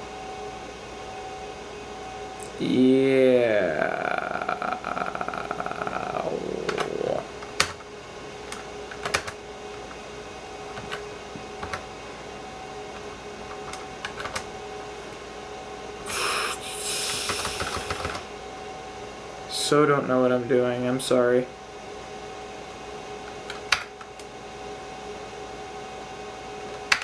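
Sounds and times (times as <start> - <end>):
faint computer hum: 0.0 - 27.0
computer keyboard typing: 8.5 - 9.4, 11.6 - 11.8, 13.5 - 14.5, 17.1 - 18.2.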